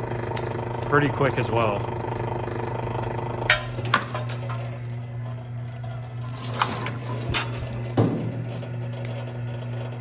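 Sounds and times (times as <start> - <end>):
machine motor humming: 0.0 - 10.0.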